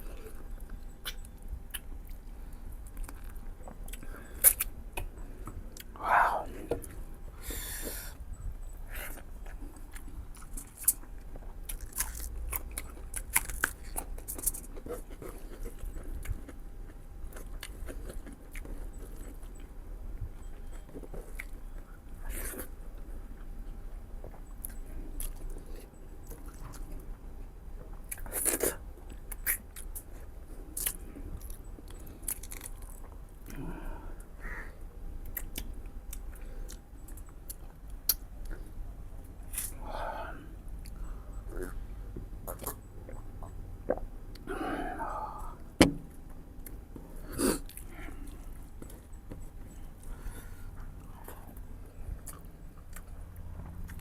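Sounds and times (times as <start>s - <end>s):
chewing and biting ribs: 0.0s - 7.0s, 7.8s - 33.6s, 40.8s - 54.0s
mouth clicks and smacks: 1.0s - 2.2s, 35.2s - 38.6s.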